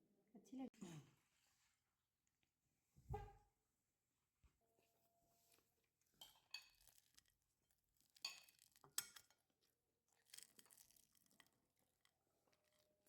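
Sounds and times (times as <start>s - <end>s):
dishes and cutlery clinking: 6.2s - 7.1s, 8.2s - 9.4s.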